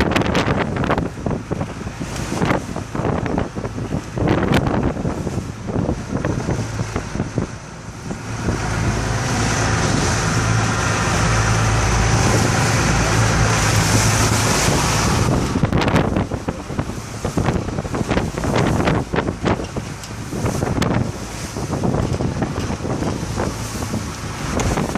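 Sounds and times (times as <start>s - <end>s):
wind buffeting microphone: 0.0s - 24.9s.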